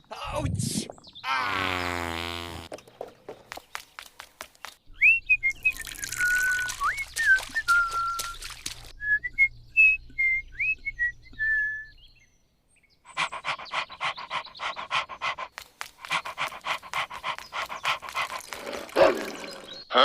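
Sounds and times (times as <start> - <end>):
short whistled notes: 5.0 - 8.4.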